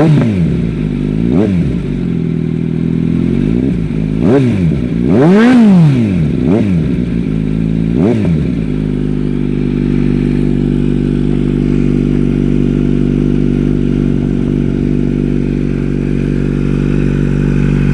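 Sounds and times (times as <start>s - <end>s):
motorcycle engine idling: 0.0s - 17.9s
motorcycle engine throttle blip: 6.4s - 17.9s.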